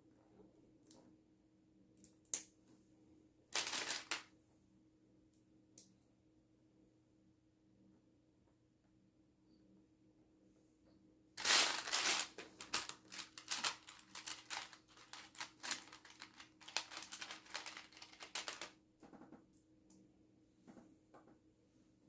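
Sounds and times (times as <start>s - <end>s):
plastic pieces clicking and clattering: 3.6s - 4.2s, 11.4s - 18.7s.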